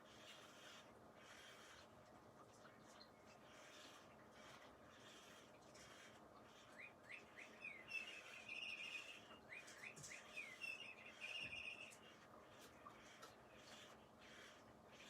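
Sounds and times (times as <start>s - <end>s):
bird singing with trill: 6.8s - 12.0s.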